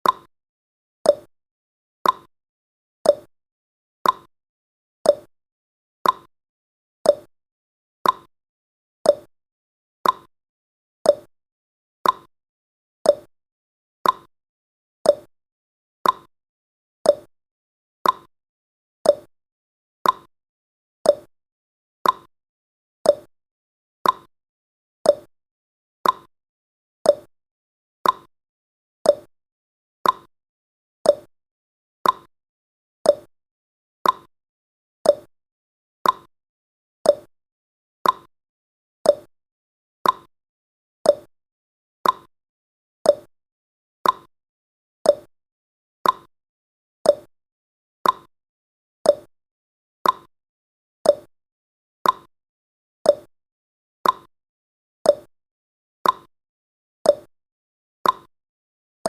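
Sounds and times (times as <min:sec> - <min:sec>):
timer ticking: 0:00.0 - 0:00.3, 0:01.1 - 0:01.3, 0:02.0 - 0:02.3, 0:03.1 - 0:03.3, 0:04.0 - 0:04.3, 0:05.1 - 0:05.3, 0:06.0 - 0:06.3, 0:07.1 - 0:07.3, 0:08.0 - 0:08.3, 0:09.1 - 0:09.3, 0:10.0 - 0:10.3, 0:11.1 - 0:11.3, 0:12.0 - 0:12.3, 0:13.1 - 0:13.3, 0:14.0 - 0:14.3, 0:15.1 - 0:15.3, 0:16.0 - 0:16.3, 0:17.1 - 0:17.3, 0:18.0 - 0:18.3, 0:19.1 - 0:19.3, 0:20.0 - 0:20.3, 0:21.1 - 0:21.3, 0:22.0 - 0:22.3, 0:23.1 - 0:23.3, 0:24.0 - 0:24.3, 0:25.1 - 0:25.3, 0:26.0 - 0:26.3, 0:27.1 - 0:27.3, 0:28.0 - 0:28.3, 0:29.1 - 0:29.3, 0:30.0 - 0:30.3, 0:31.1 - 0:31.3, 0:32.0 - 0:32.3, 0:33.1 - 0:33.3, 0:34.0 - 0:34.3, 0:35.0 - 0:35.3, 0:36.0 - 0:36.3, 0:37.1 - 0:37.3, 0:38.0 - 0:38.3, 0:39.1 - 0:39.3, 0:40.0 - 0:40.3, 0:41.1 - 0:41.3, 0:42.0 - 0:42.3, 0:43.1 - 0:43.3, 0:44.0 - 0:44.3, 0:45.1 - 0:45.3, 0:46.0 - 0:46.3, 0:47.1 - 0:47.3, 0:48.0 - 0:48.3, 0:49.1 - 0:49.3, 0:50.0 - 0:50.3, 0:51.1 - 0:51.3, 0:52.0 - 0:52.3, 0:53.1 - 0:53.3, 0:54.0 - 0:54.3, 0:55.1 - 0:55.3, 0:56.0 - 0:56.3, 0:57.1 - 0:57.3, 0:58.0 - 0:58.3.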